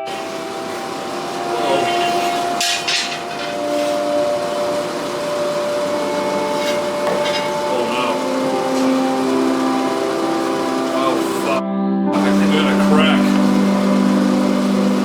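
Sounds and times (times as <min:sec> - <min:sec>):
sharp metallic knocks: 0:00.0 - 0:11.4
workshop machinery whirring: 0:00.0 - 0:11.6, 0:12.2 - 0:15.0.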